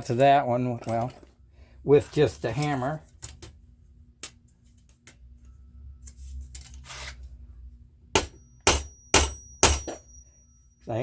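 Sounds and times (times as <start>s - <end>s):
hammer striking rivet: 8.2s - 10.1s
thin metallic ring: 8.3s - 11.0s.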